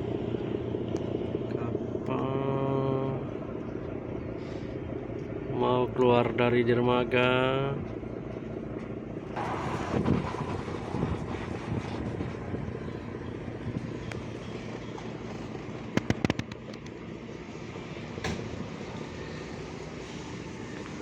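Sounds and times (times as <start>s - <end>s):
ship engine droning: 0.0s - 21.0s
sharp clicks: 15.9s - 17.0s.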